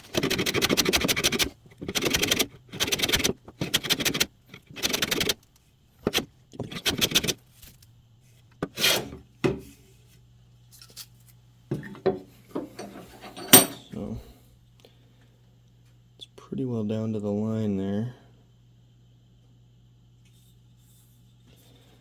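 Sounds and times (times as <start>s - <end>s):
hand plane shaving wood: 0.0s - 5.4s.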